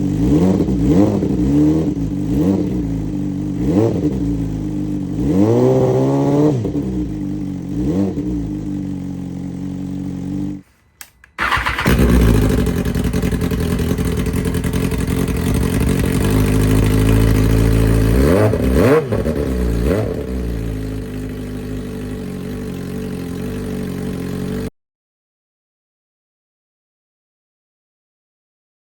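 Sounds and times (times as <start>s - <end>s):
motorcycle engine idling and revving: 0.0s - 24.7s.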